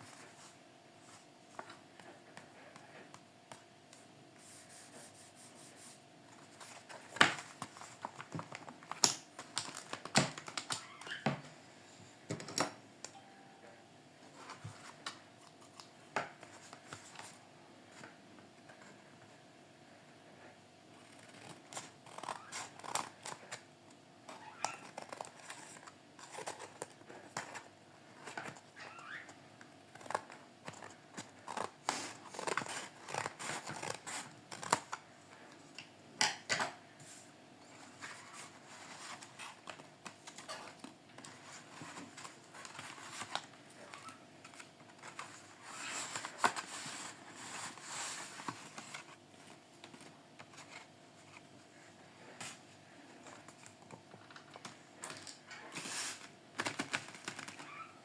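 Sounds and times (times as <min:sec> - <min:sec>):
paper rustling and crinkling: 0:06.3 - 0:10.9, 0:37.8 - 0:57.9.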